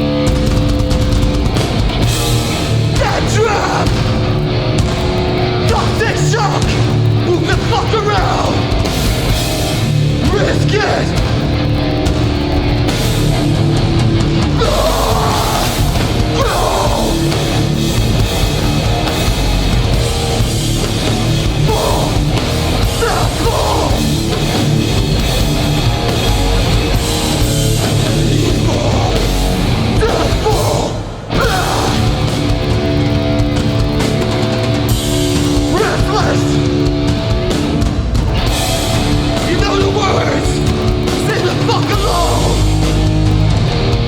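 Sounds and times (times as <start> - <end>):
distorted guitars: 0.0 - 44.0
pounding drums: 0.0 - 44.0
shouted vocals: 2.6 - 4.3, 5.6 - 8.8, 10.1 - 11.4, 14.5 - 17.8, 21.2 - 24.8, 27.8 - 32.5, 35.6 - 36.8, 39.2 - 43.1.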